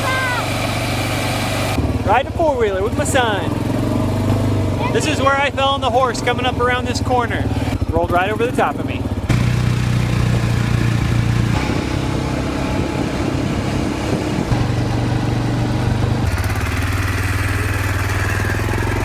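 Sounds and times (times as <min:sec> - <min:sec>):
atv engine running: 0:00.0 - 0:19.0.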